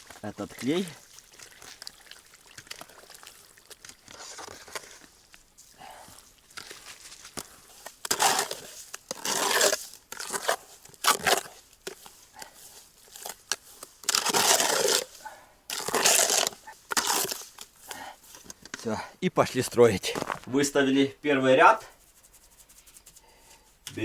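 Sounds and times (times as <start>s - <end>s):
mortar scraping in bucket: 2.6s - 20.8s.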